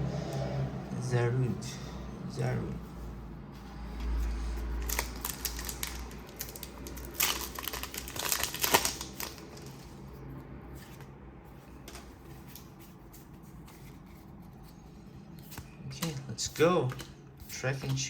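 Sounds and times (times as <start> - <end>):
cards being handled: 3.6 - 18.0
foil wrapper crinkling and tearing: 4.8 - 10.0.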